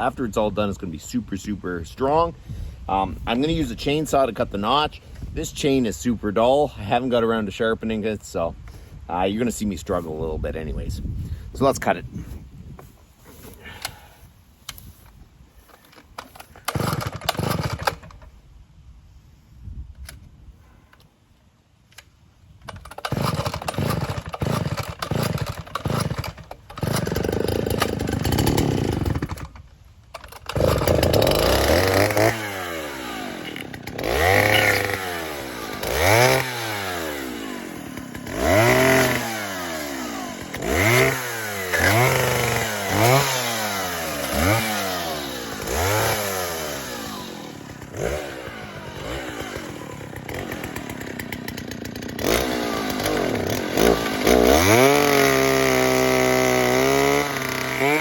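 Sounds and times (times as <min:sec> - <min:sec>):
chainsaw revving and cutting wood: 0:16.2 - 0:18.2, 0:22.8 - 0:58.0.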